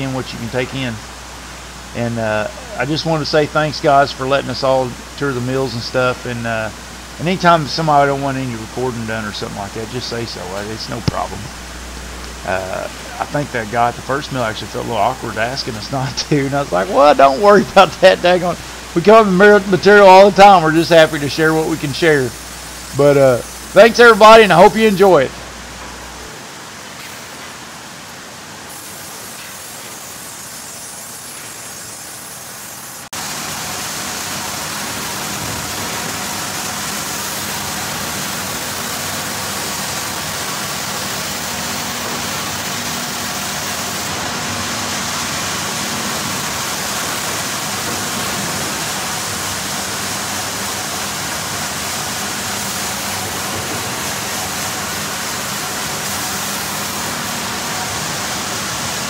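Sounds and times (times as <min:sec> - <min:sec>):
faint hum: 0:00.0 - 0:26.8
sawmill machinery din: 0:00.0 - 0:59.0.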